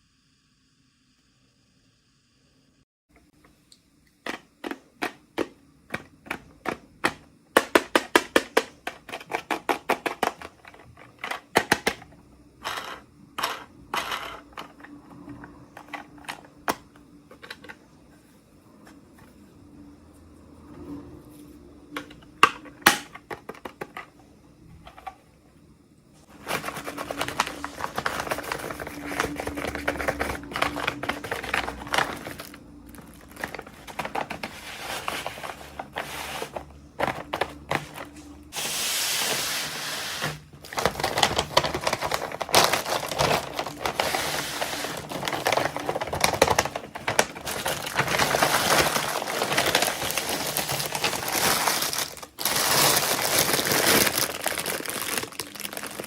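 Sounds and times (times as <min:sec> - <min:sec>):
plastic packaging crinkling: 0:26.2 - 0:56.0.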